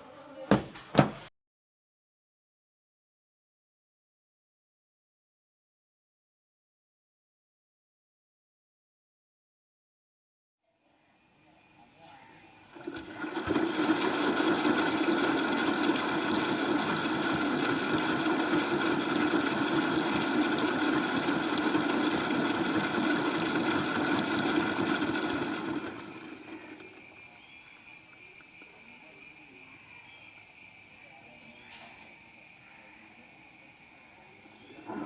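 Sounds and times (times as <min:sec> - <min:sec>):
washing machine hum with water: 0:12.2 - 0:28.8.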